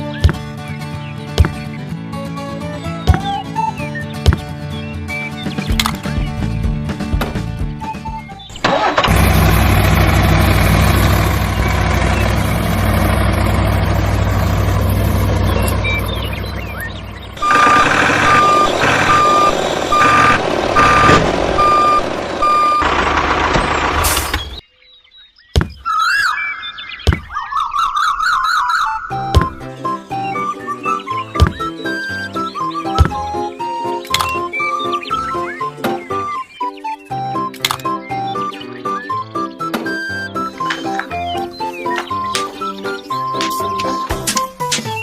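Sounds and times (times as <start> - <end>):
heavy vehicle engine running: 8.6 - 24.6
truck reversing alarm beeping: 8.7 - 24.6.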